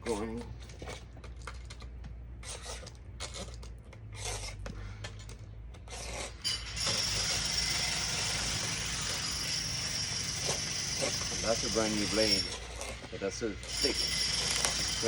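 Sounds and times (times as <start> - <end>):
angle grinder cutting plastic: 5.8 - 15.0.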